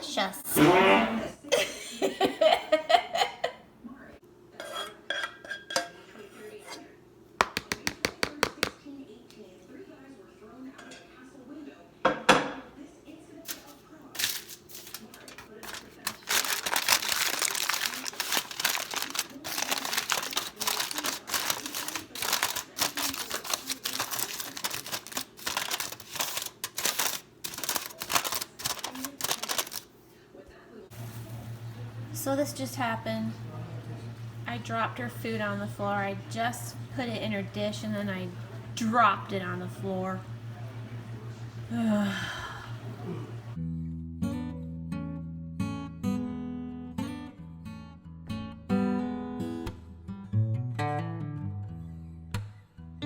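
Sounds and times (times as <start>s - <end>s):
dishes clinking and clattering: 4.6s - 6.8s, 12.1s - 12.7s.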